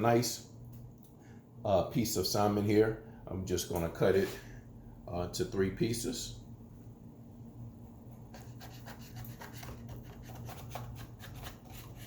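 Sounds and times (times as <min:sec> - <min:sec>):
knife scraping on cutting board: 0:08.3 - 0:12.0
knife sawing through fish: 0:08.4 - 0:12.0.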